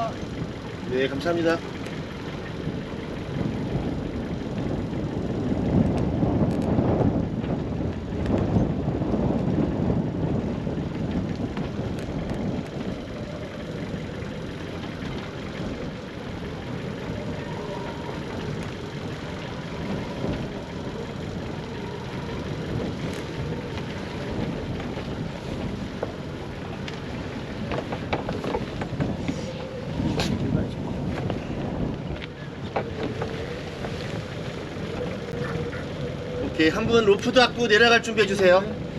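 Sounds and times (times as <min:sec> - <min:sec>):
water noise: 0:00.0 - 0:38.9
wind buffeting microphone: 0:00.0 - 0:38.9.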